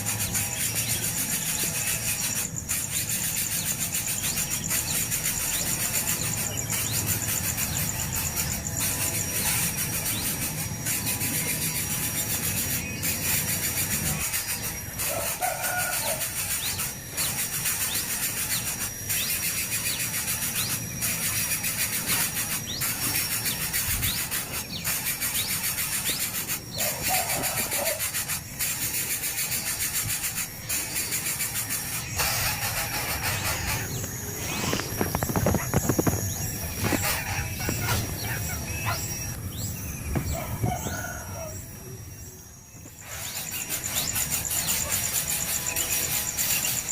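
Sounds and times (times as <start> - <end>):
nestling birds begging calls: 0.0 - 46.9
outdoor background hiss: 0.0 - 46.9
lower bird call: 21.4 - 42.1.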